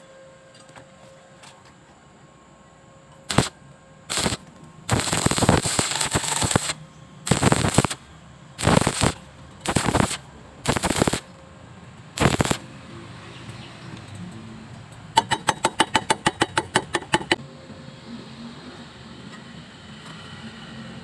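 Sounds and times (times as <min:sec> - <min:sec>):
welding arc crackling: 0:03.3 - 0:11.4, 0:12.2 - 0:12.7.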